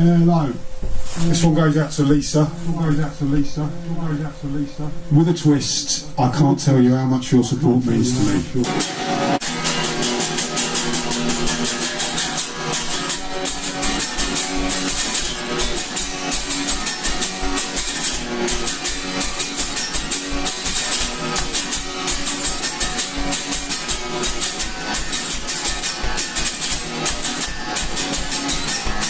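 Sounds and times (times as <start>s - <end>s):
guitar: 0.0s - 29.0s
drum beat: 8.2s - 29.0s.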